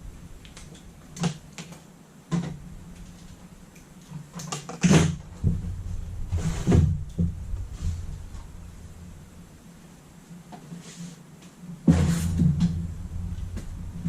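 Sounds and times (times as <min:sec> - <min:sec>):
steady low hum: 0:00.0 - 0:04.3, 0:04.9 - 0:14.0
scraping rustle: 0:02.5 - 0:09.5, 0:10.4 - 0:14.0.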